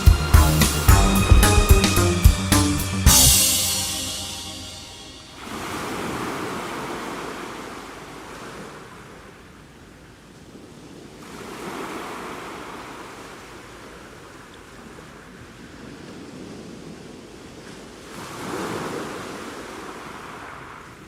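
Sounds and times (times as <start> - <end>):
waves washing onto shore: 5.4 - 21.0.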